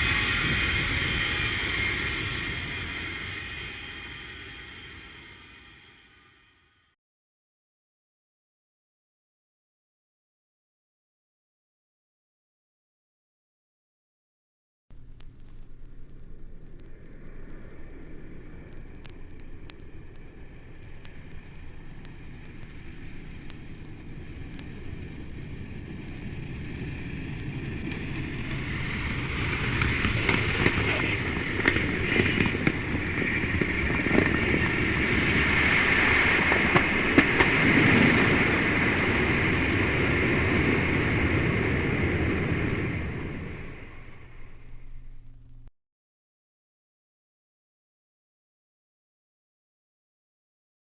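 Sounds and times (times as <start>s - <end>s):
scattered clicks: 15.0s - 40.8s.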